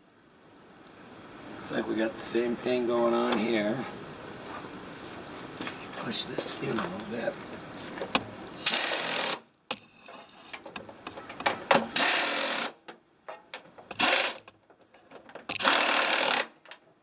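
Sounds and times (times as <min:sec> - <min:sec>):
air ratchet bursts: 0:08.6 - 0:09.9, 0:11.8 - 0:12.8, 0:13.9 - 0:14.5, 0:15.5 - 0:16.6.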